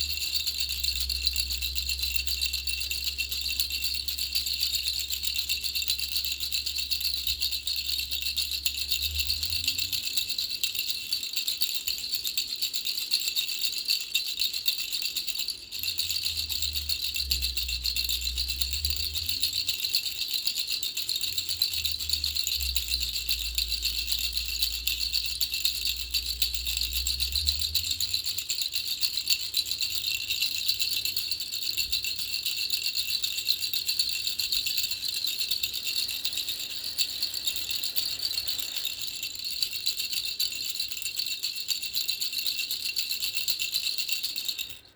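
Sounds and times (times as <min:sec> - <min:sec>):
baby rattle shaken: 0:00.0 - 0:44.9.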